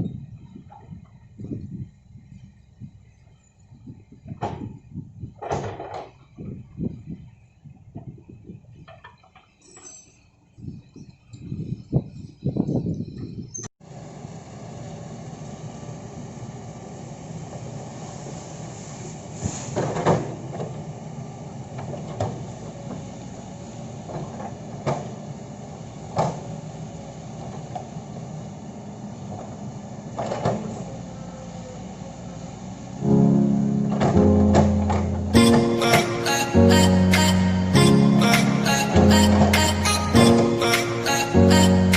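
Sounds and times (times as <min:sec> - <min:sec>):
machine clunks and knocks: 0:04.3 - 0:04.8, 0:05.4 - 0:06.6, 0:19.8 - 0:20.8, 0:33.8 - 0:36.1, 0:39.3 - 0:40.6
diesel engine running: 0:20.7 - 0:41.9
acoustic guitar music: 0:33.0 - 0:41.9.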